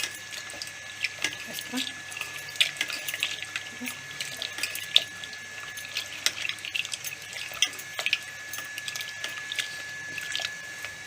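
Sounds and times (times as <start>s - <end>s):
small water splashes: 0.0s - 11.0s.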